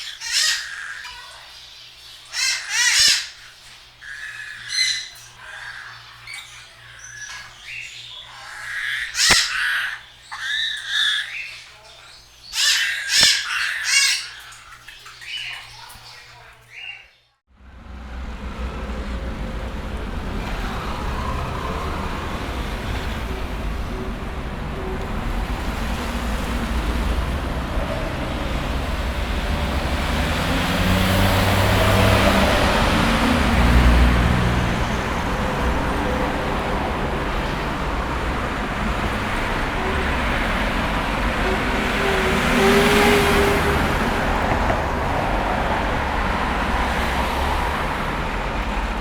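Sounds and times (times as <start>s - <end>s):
road traffic noise: 17.5s - 49.0s
vehicle passing: 17.5s - 49.0s.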